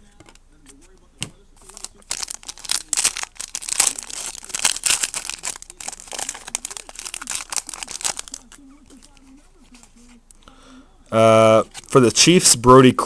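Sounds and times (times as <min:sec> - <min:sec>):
foil wrapper crinkling and tearing: 0:01.6 - 0:09.9.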